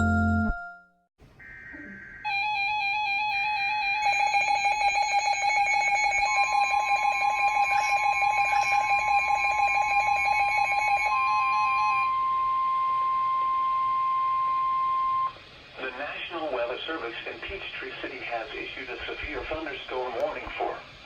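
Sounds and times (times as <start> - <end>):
steady alarm tone: 1.4 - 15.4
warbling electronic alarm: 1.4 - 15.4.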